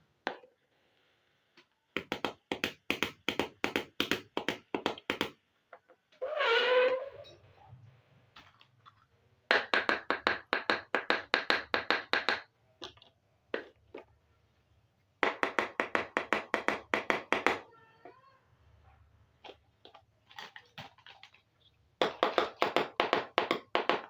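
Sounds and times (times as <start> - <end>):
rapid light taps of toy pieces: 1.6 - 5.4.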